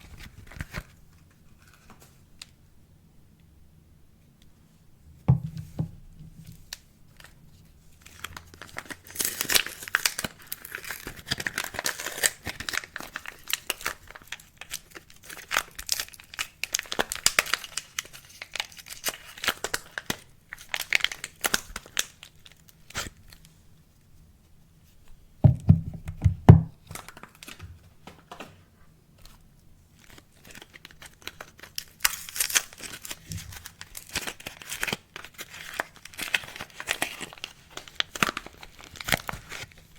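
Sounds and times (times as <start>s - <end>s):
heavy thuds: 5.3s - 6.4s, 25.5s - 26.7s
soap wrappers crinkling: 6.7s - 7.4s, 8.0s - 23.4s, 26.9s - 27.7s, 29.9s - 39.9s.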